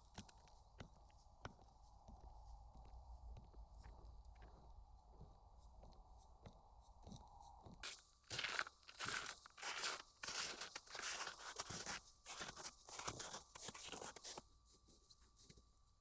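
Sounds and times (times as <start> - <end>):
footsteps crunching on frozen ground: 5.2 - 14.4.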